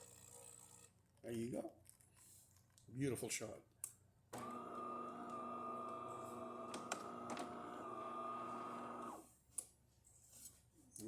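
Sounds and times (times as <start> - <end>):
espresso machine humming: 4.4 - 9.2.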